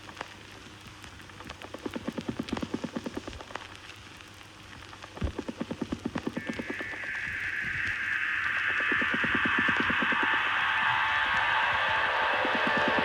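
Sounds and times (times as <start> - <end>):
pattering clicks and low pulses: 5.2 - 13.0.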